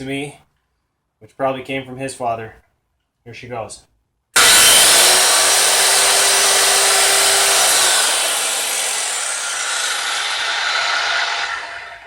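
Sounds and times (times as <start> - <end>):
circular saw whining: 4.4 - 12.0.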